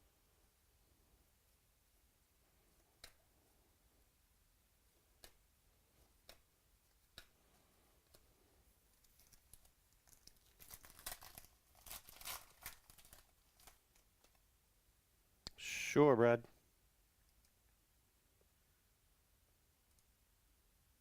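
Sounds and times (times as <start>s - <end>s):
packaging crinkling and tearing: 9.0s - 14.4s.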